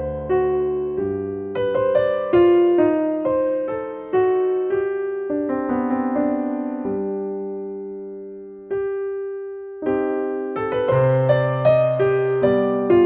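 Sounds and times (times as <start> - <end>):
soft piano chords: 0.0 - 13.0.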